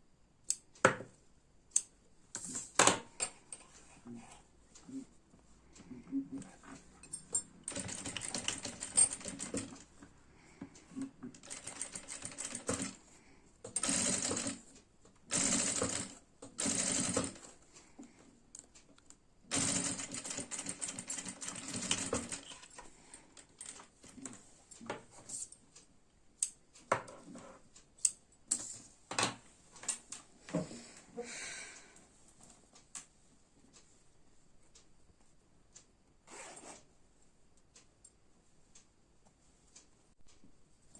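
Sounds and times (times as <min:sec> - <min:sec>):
sewing machine stitching: 0:07.6 - 0:09.8, 0:11.3 - 0:13.0, 0:13.7 - 0:14.7, 0:15.3 - 0:17.6, 0:19.5 - 0:22.7.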